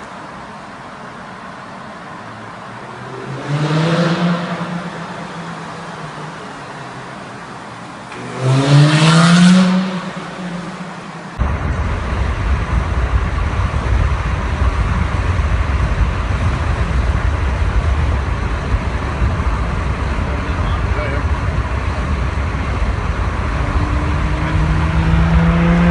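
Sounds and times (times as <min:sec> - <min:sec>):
car engine revving: 0:01.6 - 0:25.9
steady low rumble: 0:10.2 - 0:25.9.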